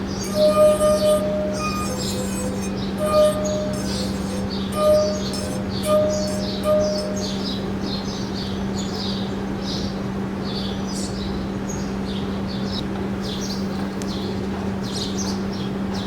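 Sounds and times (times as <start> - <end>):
steady low hum: 0.0 - 9.4.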